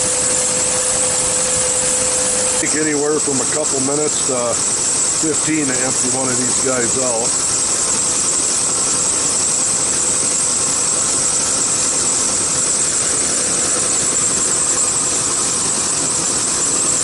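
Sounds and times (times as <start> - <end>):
steady high hiss: 0.0 - 7.8.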